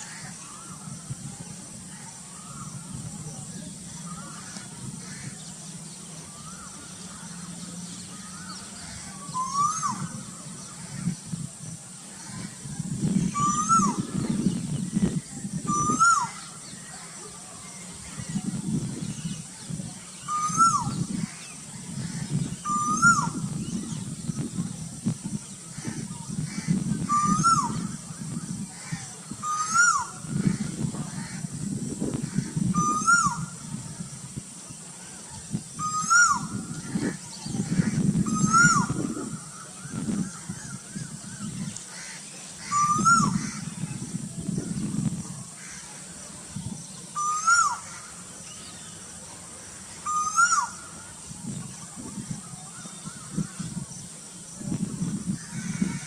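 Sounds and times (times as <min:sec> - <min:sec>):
cuckoo calling: 0:06.1 - 0:11.1, 0:13.2 - 0:17.1, 0:20.2 - 0:24.5, 0:26.9 - 0:31.0, 0:32.7 - 0:33.7, 0:35.0 - 0:45.4, 0:47.0 - 0:49.0, 0:50.0 - 0:54.1.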